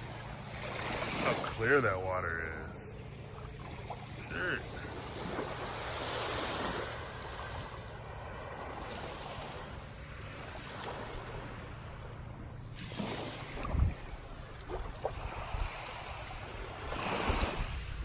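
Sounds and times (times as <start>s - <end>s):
waves washing onto sand: 0.0s - 18.0s
wind on microphone: 12.9s - 18.0s.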